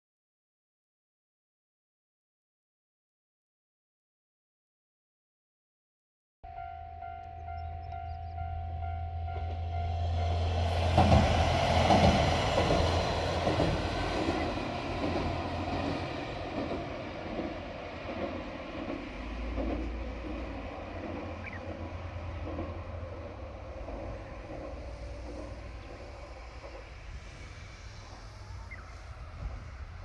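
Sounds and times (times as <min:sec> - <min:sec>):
railcar engine noise: 0:06.5 - 0:30.0
wheels clattering over rail joints: 0:10.2 - 0:29.0.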